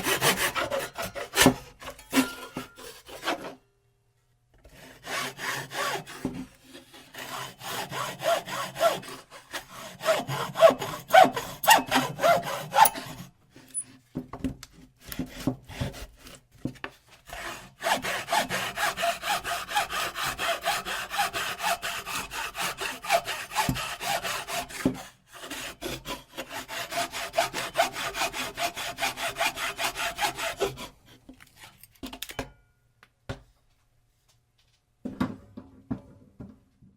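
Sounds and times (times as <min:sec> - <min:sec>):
hand saw cutting: 0:00.0 - 0:03.6, 0:04.7 - 0:14.0, 0:15.0 - 0:16.4, 0:17.2 - 0:31.8.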